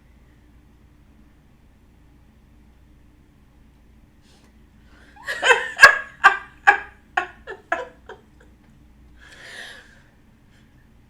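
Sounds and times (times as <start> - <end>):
person laughing: 5.2 - 8.6.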